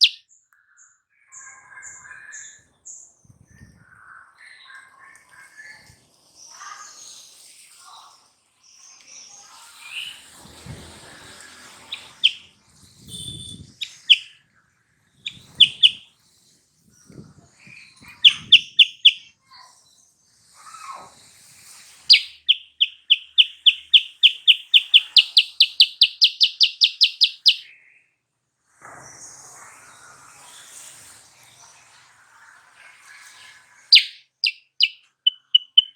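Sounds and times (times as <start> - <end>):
bird whistled notes: 0.0 - 0.2, 11.8 - 12.5, 13.1 - 14.3, 15.3 - 16.0, 18.2 - 19.3, 22.1 - 27.6, 33.9 - 35.9
bird chirps: 0.0 - 2.6, 11.8 - 12.5, 13.1 - 14.4, 15.2 - 16.1, 18.1 - 19.3, 22.1 - 27.7, 33.9 - 35.9.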